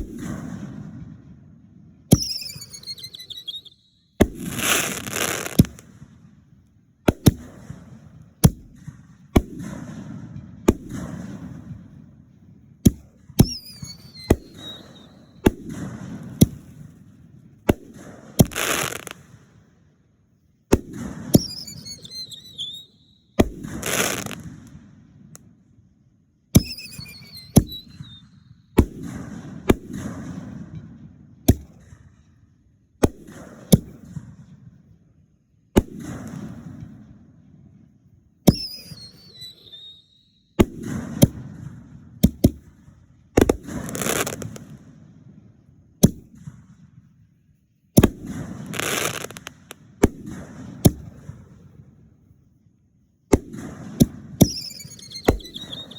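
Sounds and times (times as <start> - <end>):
descending whistles: 2.1 - 5.6, 13.4 - 15.4, 21.4 - 24.4, 26.6 - 28.7, 38.5 - 40.6, 54.4 - 55.9
fireworks shells bursting: 2.1 - 6.1, 12.9 - 17.0, 17.9 - 19.3, 20.9 - 24.7, 26.6 - 28.4, 38.5 - 41.5, 43.4 - 44.8, 48.0 - 51.2, 53.6 - 55.9
fireworks hissing: 4.4 - 5.8, 18.4 - 19.2, 23.8 - 24.4, 43.8 - 44.6, 48.7 - 49.5.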